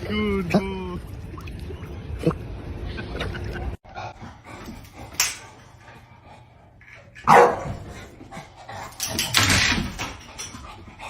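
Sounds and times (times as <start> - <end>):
dog barking: 7.2 - 7.8.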